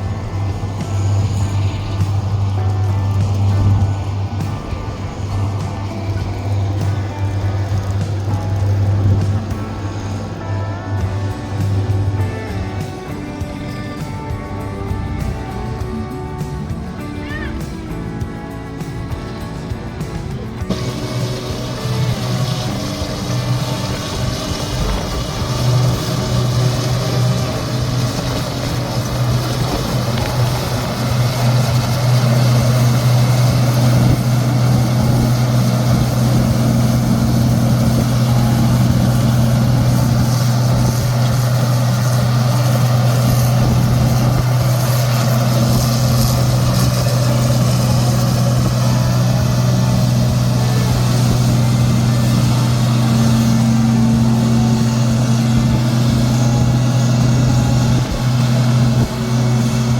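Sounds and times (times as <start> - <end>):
engine running steadily: 0.0 - 59.9.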